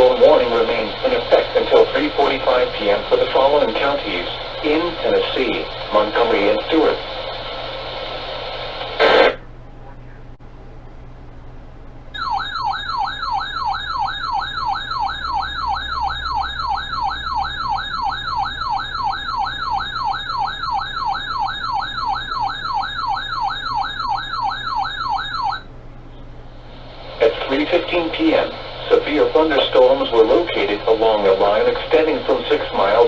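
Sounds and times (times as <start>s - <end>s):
faint radio hum: 0.0s - 12.2s, 25.7s - 33.0s
electronic siren alert tone: 12.2s - 25.7s.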